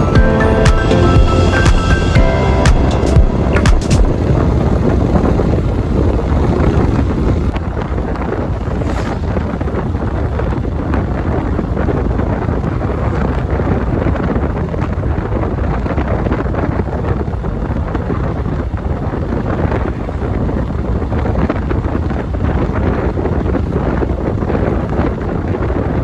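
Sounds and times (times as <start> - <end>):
wind buffeting microphone: 0.0 - 26.0.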